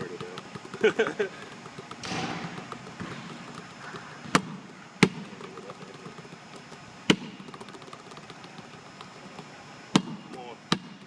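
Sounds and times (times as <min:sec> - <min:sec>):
basketball bouncing on hard court: 0:00.0 - 0:11.0.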